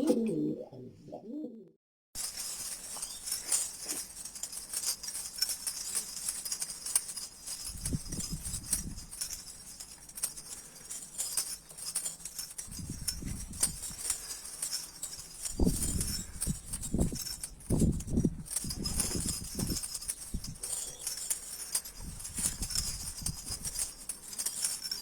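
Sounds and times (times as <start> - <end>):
pigeon cooing: 0.0 - 1.8.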